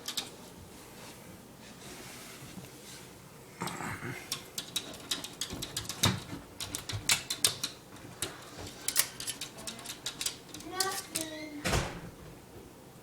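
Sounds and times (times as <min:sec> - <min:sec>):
puppy claws tapping on hard floor: 0:04.3 - 0:11.3.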